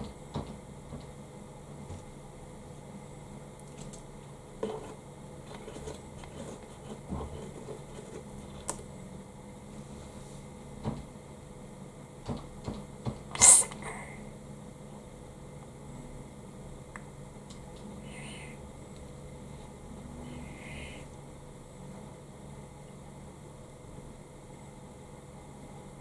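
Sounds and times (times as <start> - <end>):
turtle sneezing: 13.3 - 14.2.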